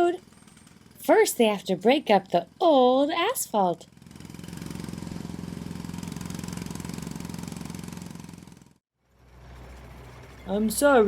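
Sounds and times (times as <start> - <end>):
jackhammer hammering asphalt: 0.0 - 11.0
low engine rumble: 3.9 - 11.0.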